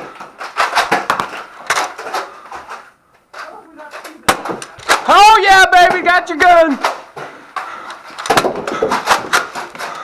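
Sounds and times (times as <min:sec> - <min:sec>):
sharp knocks and clacks: 0:00.0 - 0:05.1.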